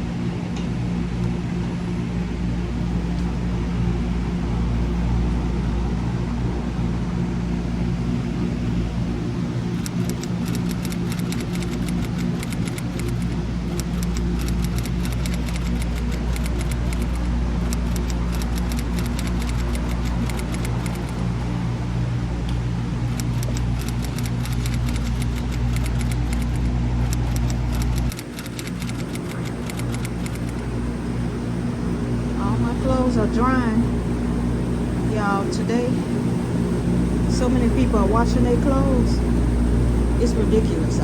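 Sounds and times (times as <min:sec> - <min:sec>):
washers and dryers humming: 0:00.0 - 0:41.0
rapid clicking and rattling: 0:09.6 - 0:21.3, 0:23.1 - 0:30.6.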